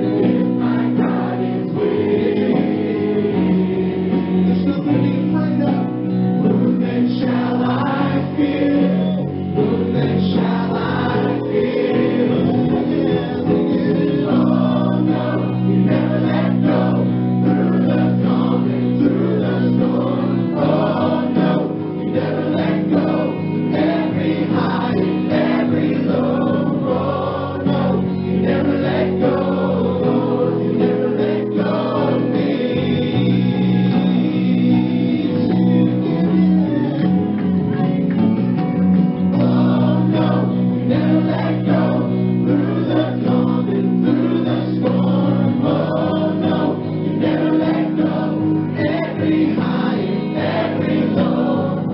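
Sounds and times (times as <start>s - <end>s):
choir singing gospel music: 0.0s - 51.9s.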